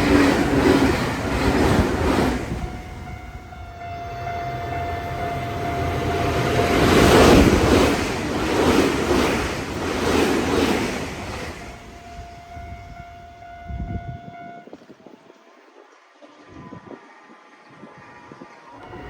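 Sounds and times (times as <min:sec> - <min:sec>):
train wheels clacking: 0:00.0 - 0:13.9
level-crossing alarm tones: 0:01.7 - 0:08.0.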